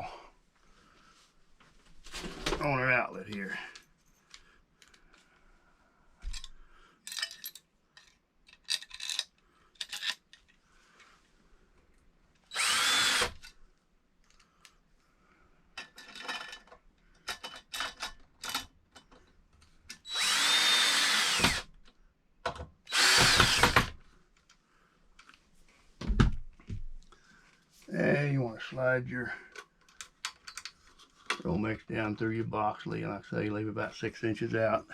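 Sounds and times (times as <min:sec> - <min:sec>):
power drill driving screws: 0:12.5 - 0:13.5, 0:20.0 - 0:21.7, 0:22.9 - 0:24.0.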